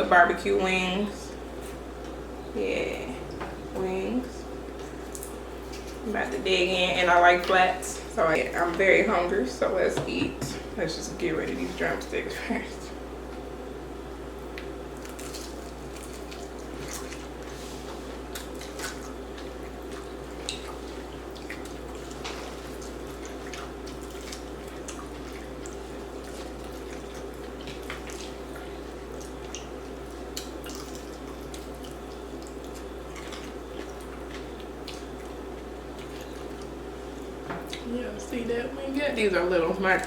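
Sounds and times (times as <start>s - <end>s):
wet chewing and lip-smacking: 14.4s - 37.9s.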